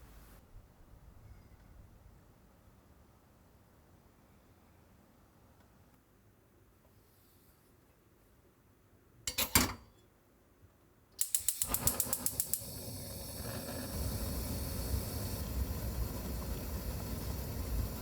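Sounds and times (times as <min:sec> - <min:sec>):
stove knob clicks: 0:11.2 - 0:12.7
burning gas rushing: 0:11.2 - 0:18.0
igniter ticking rapidly: 0:11.2 - 0:18.0.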